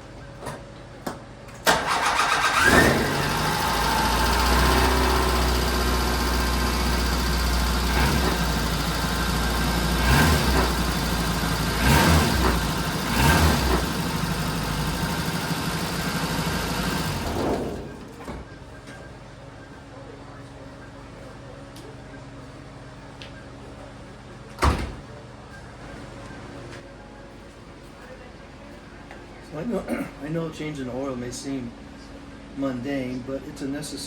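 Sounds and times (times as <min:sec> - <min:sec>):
car engine starting and idling: 0:01.6 - 0:18.2
engine throttle blips: 0:01.7 - 0:18.2.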